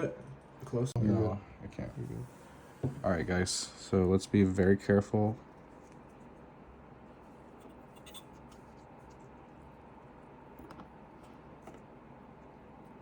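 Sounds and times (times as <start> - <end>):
low room hum: 0.0 - 13.0
small clicks and scratches: 7.5 - 9.4.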